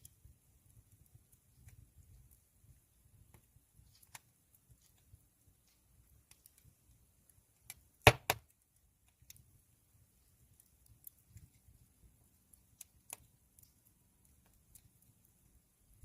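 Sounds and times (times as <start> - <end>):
wood fire crackling: 0.0 - 16.0
loud pops from fire: 7.7 - 8.5.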